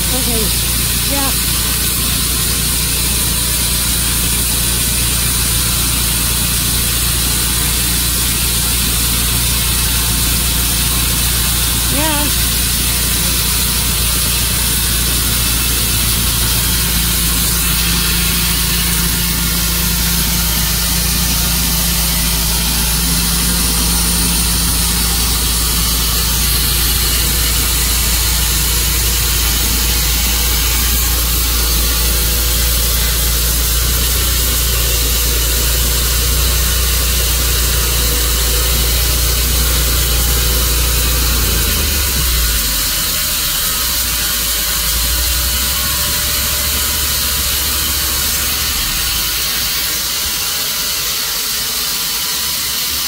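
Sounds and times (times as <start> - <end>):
sawmill engine humming: 0.0 - 53.0.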